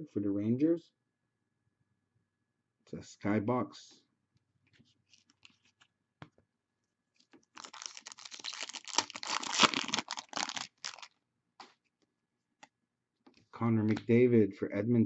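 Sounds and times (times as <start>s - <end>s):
foil wrapper tearing and crinkling: 7.5s - 11.1s.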